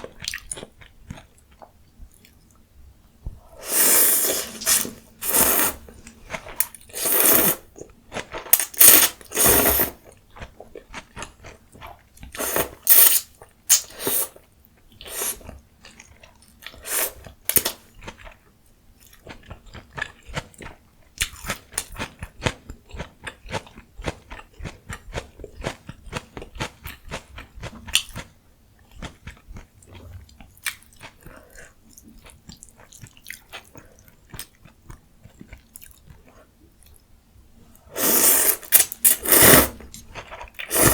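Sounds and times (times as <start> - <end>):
close-miked eating: 3.5 - 14.4.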